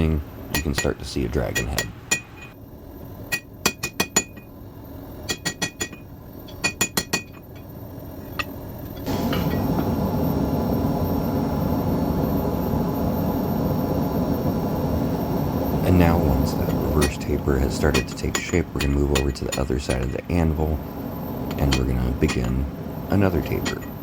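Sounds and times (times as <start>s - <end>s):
hammer striking steel on anvil: 0.5s - 2.6s, 3.3s - 4.5s, 5.3s - 9.8s, 16.5s - 20.3s, 21.5s - 22.7s, 23.4s - 23.9s
steady rushing noise: 8.3s - 24.0s.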